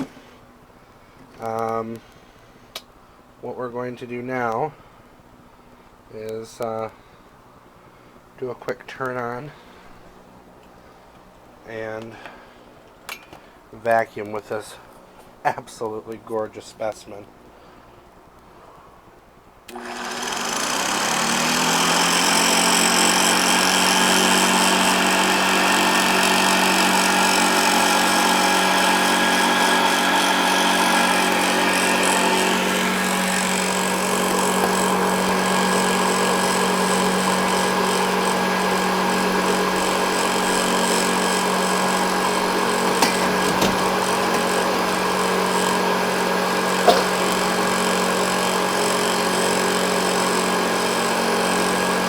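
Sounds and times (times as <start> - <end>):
vacuum cleaner running: 0.0 - 0.3, 19.7 - 52.0.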